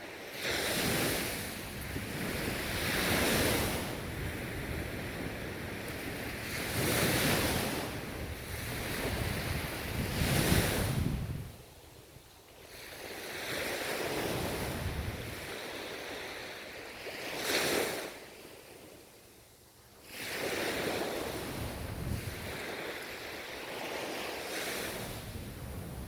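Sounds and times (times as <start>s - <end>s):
ocean waves breaking: 0.0s - 11.4s, 20.0s - 26.0s
wind noise on microphone: 0.0s - 19.0s, 20.0s - 26.0s.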